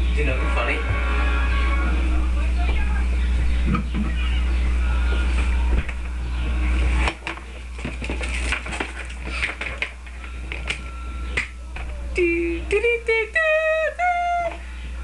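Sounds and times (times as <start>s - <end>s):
short held notes rising: 0.0s - 2.4s.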